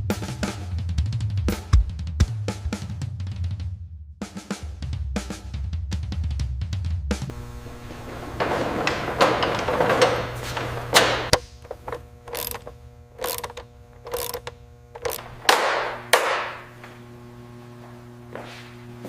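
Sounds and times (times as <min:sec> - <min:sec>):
steady low hum: 0:07.3 - 0:19.0
mechanical clicks on metal parts: 0:11.0 - 0:15.3.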